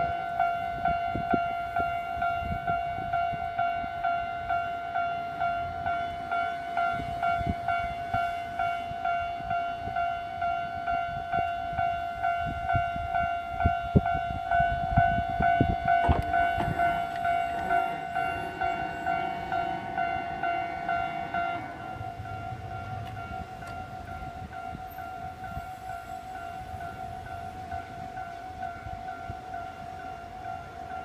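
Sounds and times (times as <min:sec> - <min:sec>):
level crossing bell ringing: 0:00.1 - 0:31.0
train wheels knocking on rail joints: 0:14.9 - 0:25.0.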